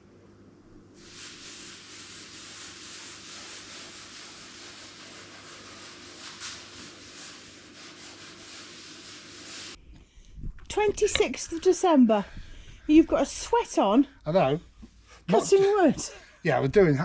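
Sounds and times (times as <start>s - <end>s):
sandpaper rubbing on wood: 1.0s - 9.8s.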